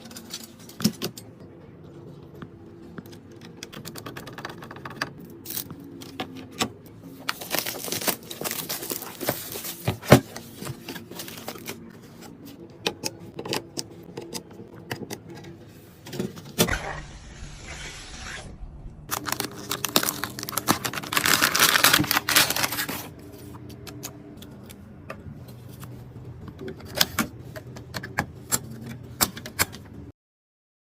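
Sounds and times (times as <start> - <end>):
packaging rustling and tearing: 7.2 - 11.9, 19.1 - 23.2.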